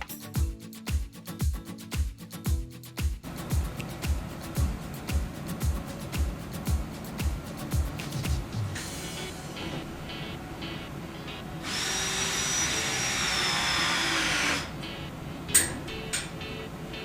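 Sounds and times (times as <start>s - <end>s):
background music: 0.0s - 11.8s
power tool whining: 11.6s - 14.9s.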